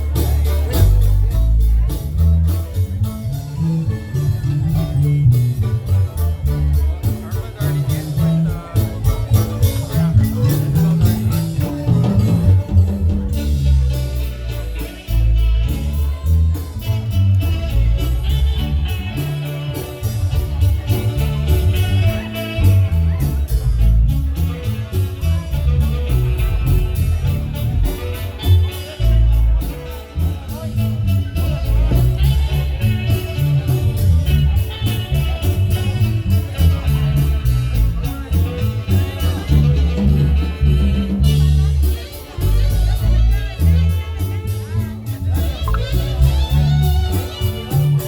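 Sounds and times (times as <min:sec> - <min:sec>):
percussion beat: 0:00.0 - 0:28.8, 0:45.3 - 0:48.0
heavy bass line: 0:00.0 - 0:48.0
marimba band playing: 0:00.0 - 0:48.0.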